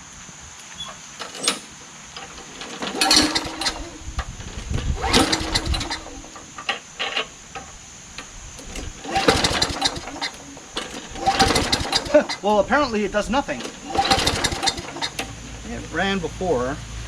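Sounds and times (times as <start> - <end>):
small engine cranking: 1.2 - 7.3, 8.6 - 15.9.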